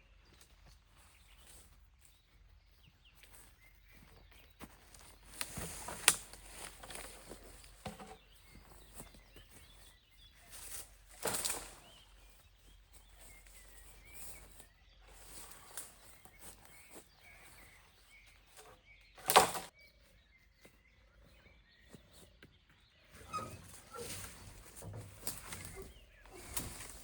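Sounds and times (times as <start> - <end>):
footsteps on forest ground: 0.1 - 27.0
faint bird chirps: 8.2 - 24.5.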